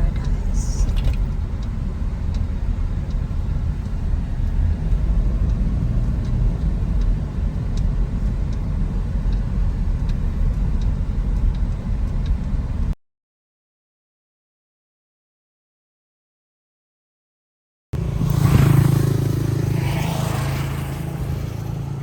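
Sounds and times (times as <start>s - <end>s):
road noise: 0.0s - 13.0s, 18.0s - 22.0s
vehicle engine rumble: 0.0s - 13.0s, 18.0s - 22.0s.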